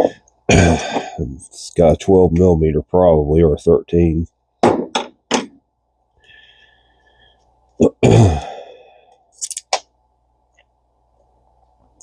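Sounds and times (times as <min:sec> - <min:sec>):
man sighing heavily: 0:08.0 - 0:09.0.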